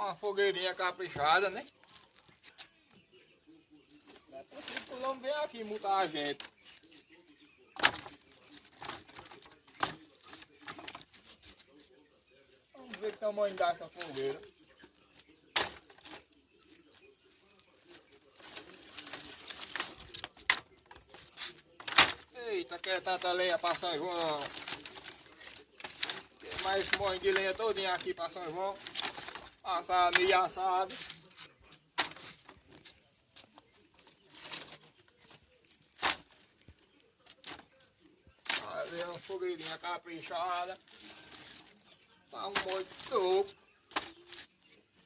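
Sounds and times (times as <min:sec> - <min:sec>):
wood scraping: 0:04.0 - 0:07.2, 0:07.8 - 0:12.0, 0:12.7 - 0:45.0
firewood knocking and clattering: 0:07.8 - 0:11.2, 0:15.1 - 0:16.3, 0:18.4 - 0:30.5
rustling and clicks: 0:17.8 - 0:44.5.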